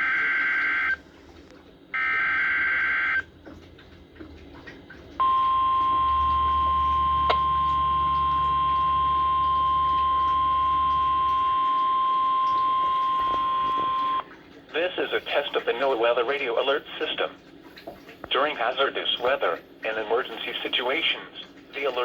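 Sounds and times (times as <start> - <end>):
steady high alarm beep: 0.0 - 1.0, 2.0 - 3.3, 5.2 - 14.3.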